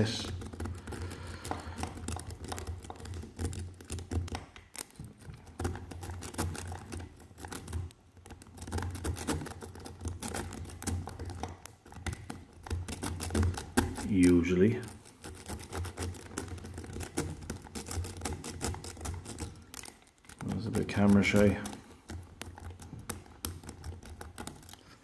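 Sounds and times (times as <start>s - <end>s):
lock pick clicking and scraping: 0.0s - 25.0s.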